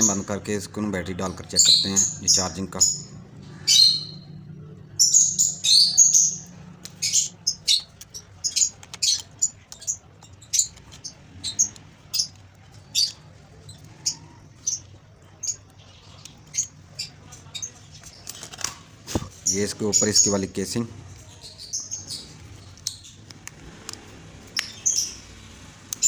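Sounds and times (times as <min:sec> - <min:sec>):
steady low hum: 0:00.0 - 0:18.2
small bird chirping: 0:01.2 - 0:23.4, 0:24.4 - 0:26.0.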